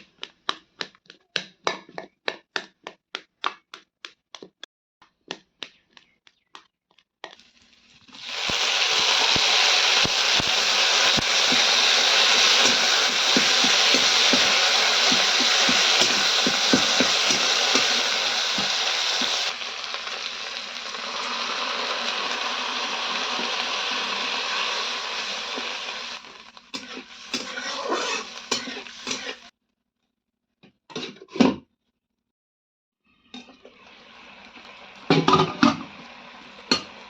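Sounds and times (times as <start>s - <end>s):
spatula stirring and knocking pan: 0.0s - 7.4s, 10.1s - 19.5s, 23.2s - 29.5s
food sizzling in a pan: 7.4s - 29.5s, 33.6s - 37.0s.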